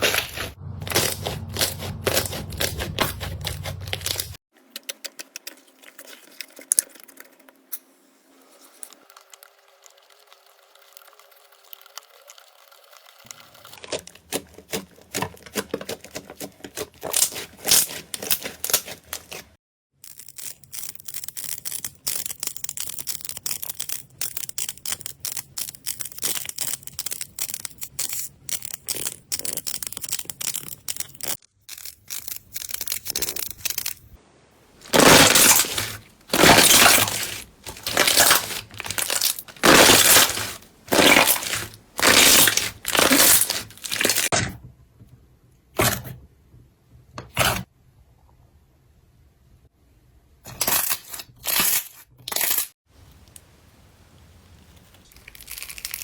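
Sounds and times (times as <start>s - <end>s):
loud crunches: 0.0s - 4.4s, 34.8s - 44.4s, 55.0s - 56.0s
slime squeezed by hands: 34.8s - 44.3s.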